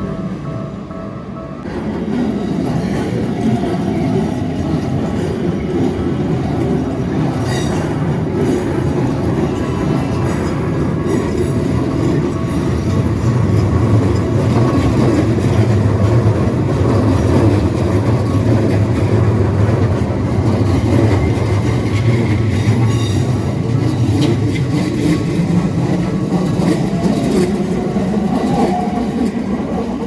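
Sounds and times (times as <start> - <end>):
train wheels on track: 0.0 - 30.0.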